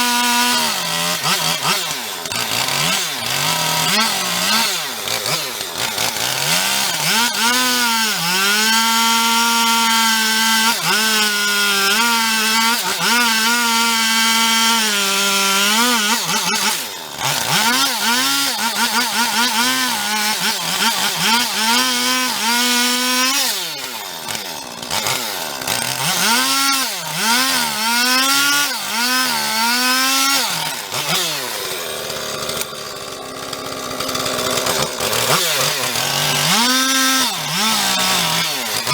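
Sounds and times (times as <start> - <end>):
chainsaw cutting wood: 0.0 - 38.9.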